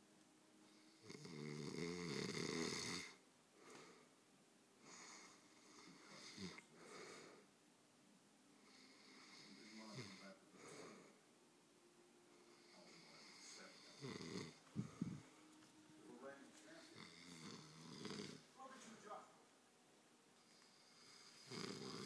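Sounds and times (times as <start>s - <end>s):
quiet breaths: 0.0s - 22.0s
person snoring: 0.7s - 4.0s, 4.8s - 7.4s, 8.6s - 11.2s, 12.4s - 15.4s, 16.7s - 18.5s, 20.5s - 22.0s.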